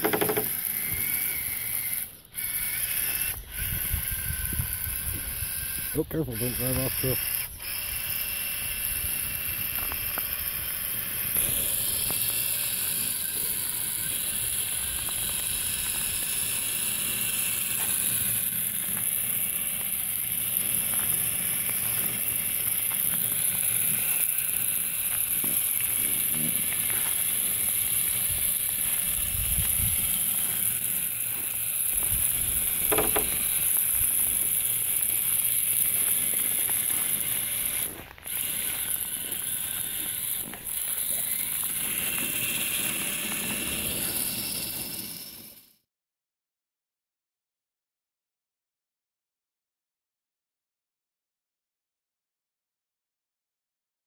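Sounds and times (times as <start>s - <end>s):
electric motor and gears whirring: 0.0s - 45.8s
tracks clicking over snow: 8.9s - 45.6s.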